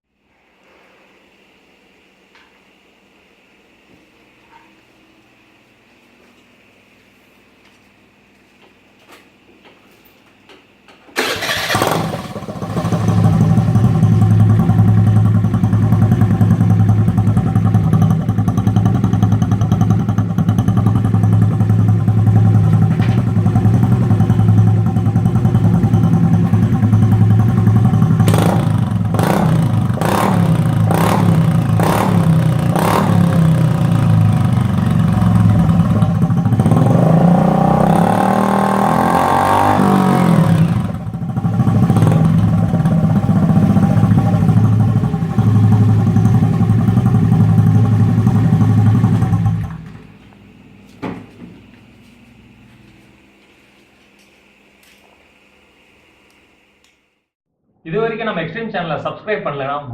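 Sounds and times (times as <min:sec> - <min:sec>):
scooter engine idling: 0:11.2 - 0:38.2, 0:40.1 - 0:50.1
scooter engine starting: 0:11.2 - 0:50.2.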